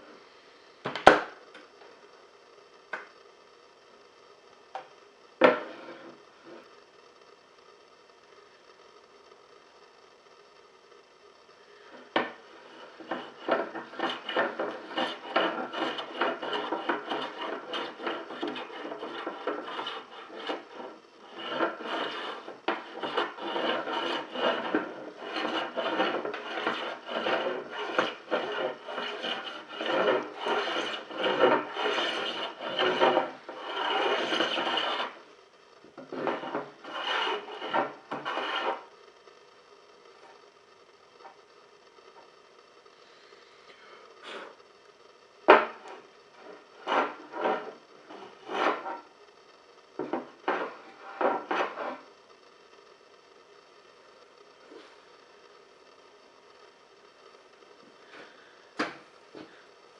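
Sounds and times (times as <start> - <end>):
hand tool scraping wood: 12.0 - 35.2, 36.0 - 38.9, 45.5 - 49.1, 50.0 - 52.0.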